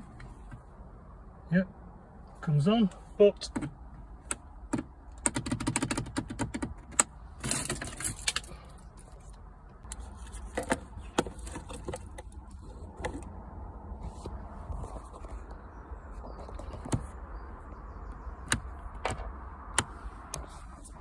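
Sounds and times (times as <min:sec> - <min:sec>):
keys jangling: 0:07.4 - 0:08.7.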